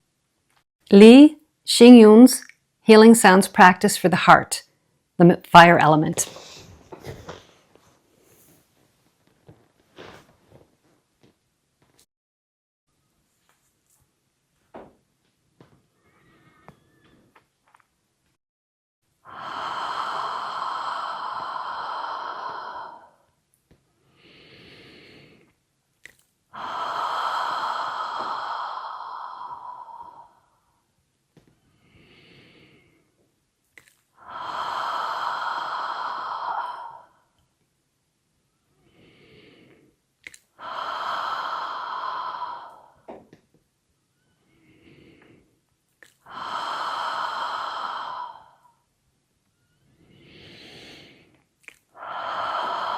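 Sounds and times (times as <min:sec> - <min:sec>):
person breathing in: 0:19.3 - 0:23.2, 0:26.6 - 0:30.6, 0:34.2 - 0:37.4, 0:40.6 - 0:43.1, 0:46.3 - 0:48.8, 0:50.0 - 0:51.4, 0:52.0 - 0:52.9
person exhaling breathily: 0:19.3 - 0:23.2, 0:26.6 - 0:30.6, 0:34.2 - 0:37.3, 0:40.6 - 0:43.1, 0:46.3 - 0:48.8, 0:50.1 - 0:51.3, 0:52.0 - 0:52.9.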